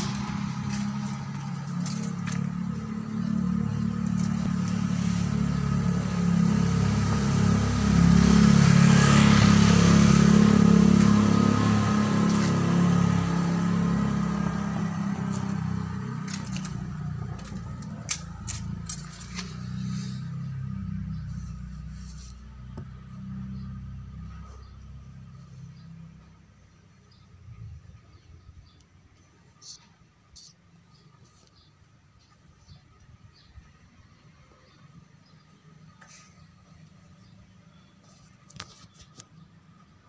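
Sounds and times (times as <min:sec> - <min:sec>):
vehicle engine humming: 0:00.0 - 0:26.6.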